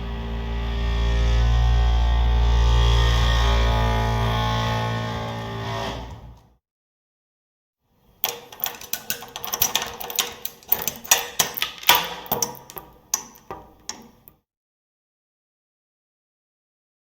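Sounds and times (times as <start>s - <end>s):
door lock and handle rattling: 8.2s - 14.3s.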